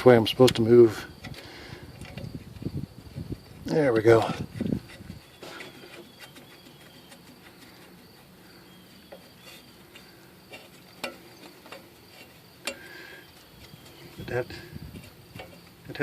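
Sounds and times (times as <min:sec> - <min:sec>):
insect chirring: 0:00.0 - 0:16.0
tools clicking and tapping: 0:09.1 - 0:14.2, 0:15.0 - 0:15.9.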